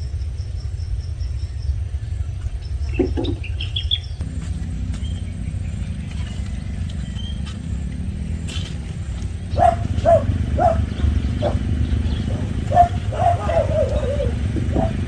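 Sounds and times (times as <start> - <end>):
faint bird chirps: 0.0 - 14.9
low rumble: 0.0 - 15.0
animal short calls: 9.5 - 15.0.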